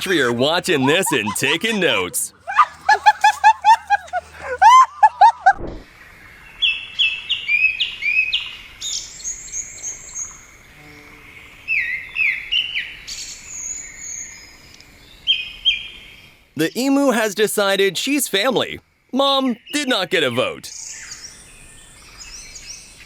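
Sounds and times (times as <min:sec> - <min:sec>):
songbird chirping: 0:00.0 - 0:05.3
dog yapping: 0:00.0 - 0:05.5.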